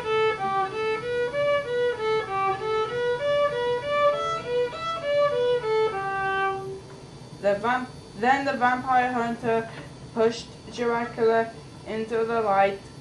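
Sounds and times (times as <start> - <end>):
solo violin melody: 0.0 - 6.8.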